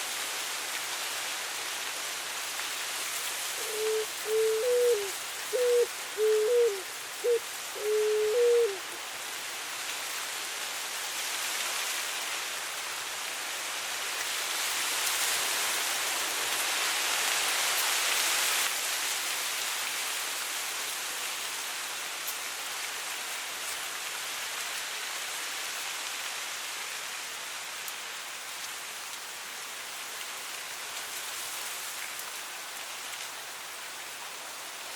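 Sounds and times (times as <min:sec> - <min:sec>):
wind rustling dry grass: 0:00.0 - 0:34.9
dove cooing: 0:03.6 - 0:09.0.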